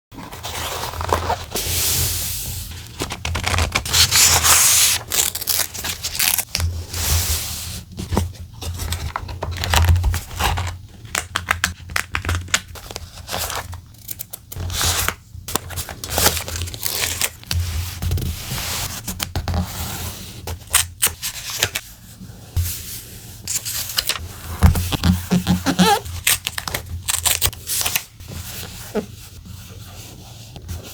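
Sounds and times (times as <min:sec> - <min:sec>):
paper rustling and tearing: 0:02.8 - 0:06.6, 0:12.8 - 0:17.6, 0:23.5 - 0:29.0
scissors snipping paper: 0:25.7 - 0:28.0.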